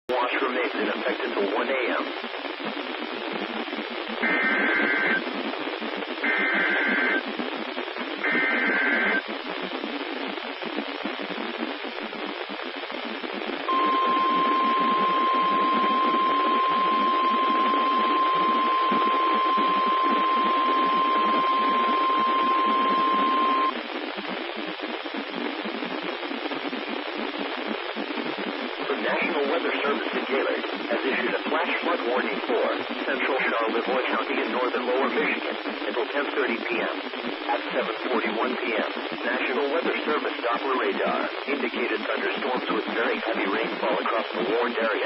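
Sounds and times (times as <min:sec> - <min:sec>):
radio hiss: 0:00.1 - 0:45.0
receiver static: 0:00.1 - 0:45.0
steady warning alarm tone: 0:04.2 - 0:05.2, 0:06.2 - 0:07.2, 0:08.2 - 0:09.2, 0:13.7 - 0:23.7
digital header data bursts: 0:04.2 - 0:05.3, 0:06.2 - 0:07.2, 0:08.2 - 0:09.2, 0:13.7 - 0:23.7.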